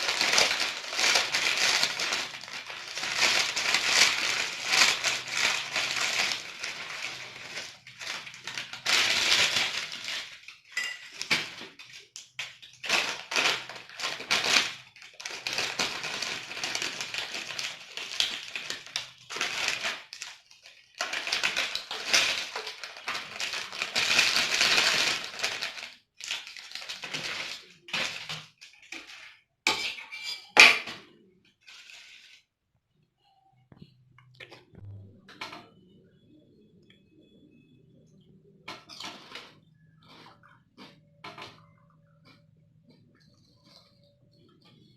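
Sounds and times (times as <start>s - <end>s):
potato chips crunching: 0.0s - 10.6s.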